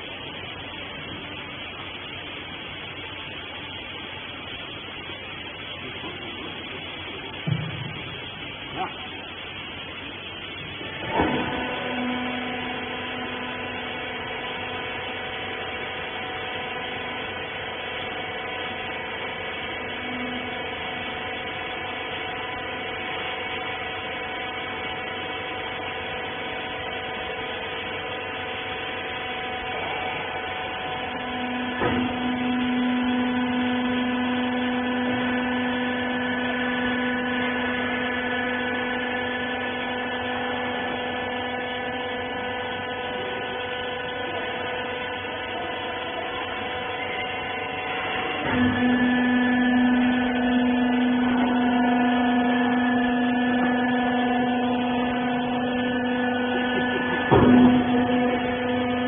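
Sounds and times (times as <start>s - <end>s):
electric motor and pump humming: 0.0s - 59.0s.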